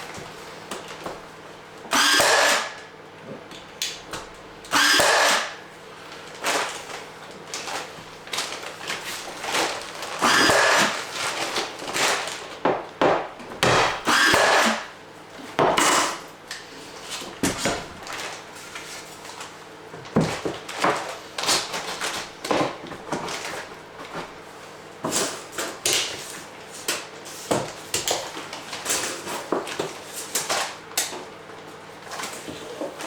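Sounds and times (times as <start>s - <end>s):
power drill running: 1.9s - 2.7s, 4.7s - 5.6s, 10.2s - 11.0s, 14.0s - 14.8s.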